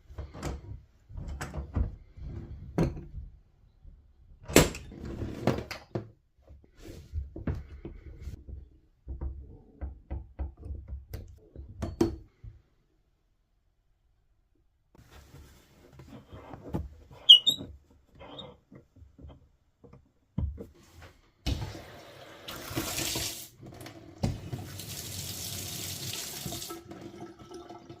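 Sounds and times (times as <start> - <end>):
tap water running: 21.5 - 28.0.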